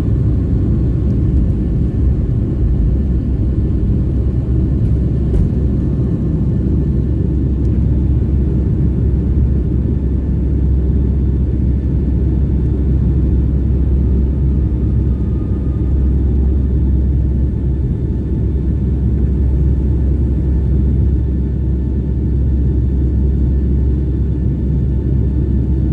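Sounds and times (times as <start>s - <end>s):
airliner cabin engine rumble: 0.0s - 25.9s.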